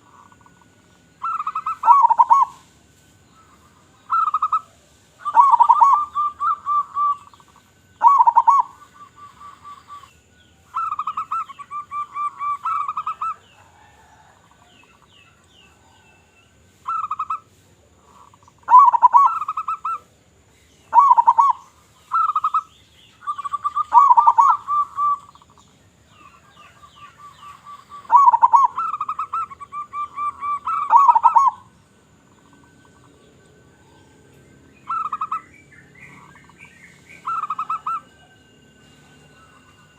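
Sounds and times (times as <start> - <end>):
dove cooing: 0.0 - 2.7, 3.5 - 10.1, 10.7 - 14.9, 16.9 - 20.1, 20.9 - 33.1, 34.8 - 39.9.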